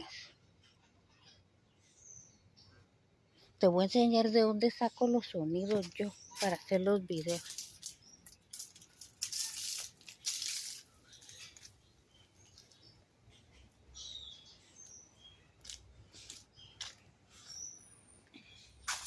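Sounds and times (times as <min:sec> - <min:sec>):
birds chirping: 0:00.0 - 0:19.0
rustling noise: 0:05.7 - 0:11.8.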